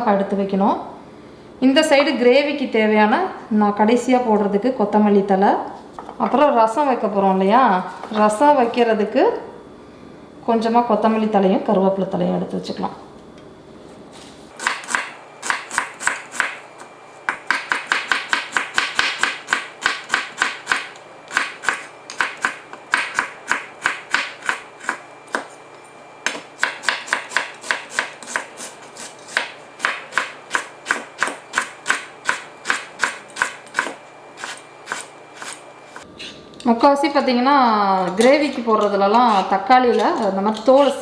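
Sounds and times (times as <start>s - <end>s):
knife chopping on cutting board: 14.6s - 16.6s, 17.3s - 25.5s, 26.2s - 36.0s.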